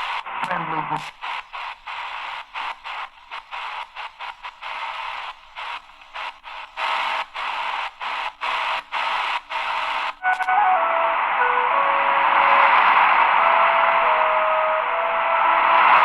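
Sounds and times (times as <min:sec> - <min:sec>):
radio static: 0:00.0 - 0:16.0.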